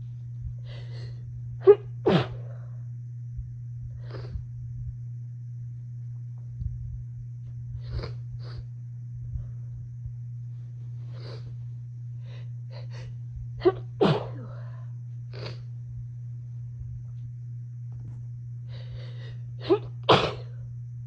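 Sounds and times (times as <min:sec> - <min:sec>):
person breathing: 0:00.4 - 0:01.3, 0:03.9 - 0:04.5, 0:07.8 - 0:09.9, 0:11.0 - 0:15.7, 0:18.6 - 0:19.6
person sneezing: 0:01.0 - 0:02.5, 0:12.8 - 0:14.8, 0:19.6 - 0:20.5.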